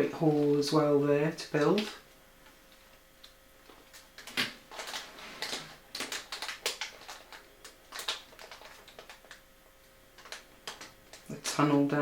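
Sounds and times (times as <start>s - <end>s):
paper pages rustling: 3.7s - 9.4s.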